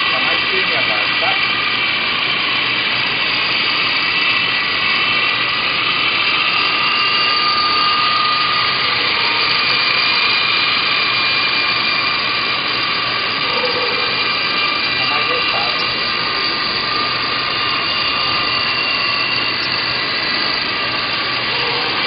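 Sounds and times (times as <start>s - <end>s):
electric motor whine: 0.0s - 22.0s
rotors rushing: 0.0s - 22.0s.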